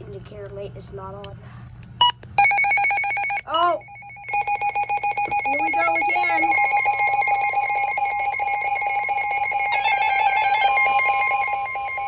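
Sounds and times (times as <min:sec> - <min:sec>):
steady alarm tone: 0:02.4 - 0:12.0
weather radio alert beeps: 0:02.4 - 0:12.0.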